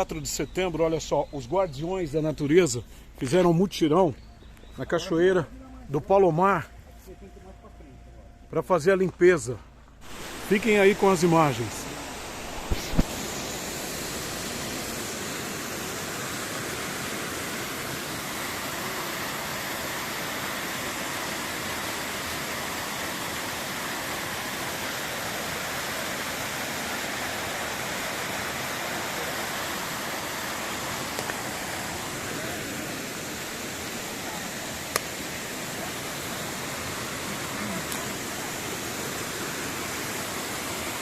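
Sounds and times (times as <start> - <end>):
waterfall rushing: 10.0 - 41.0.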